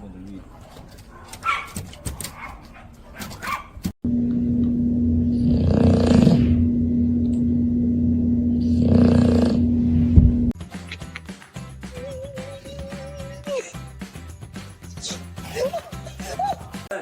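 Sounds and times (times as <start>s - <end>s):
steady low hum: 4.0s - 10.6s
person snoring: 5.3s - 6.7s, 8.6s - 10.0s.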